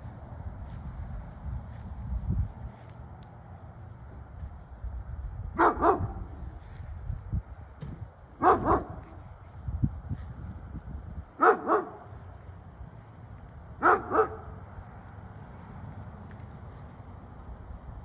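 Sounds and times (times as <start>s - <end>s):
dog barking: 5.6s - 6.3s, 8.4s - 9.2s, 11.4s - 12.0s, 13.8s - 14.6s.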